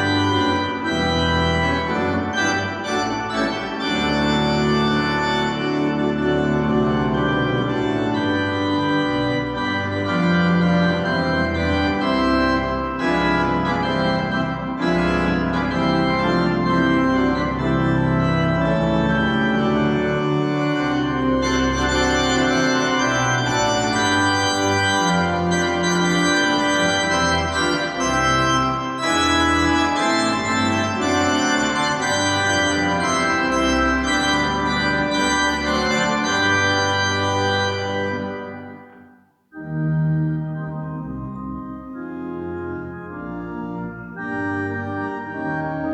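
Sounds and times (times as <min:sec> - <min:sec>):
church organ chords: 0:00.0 - 0:45.9.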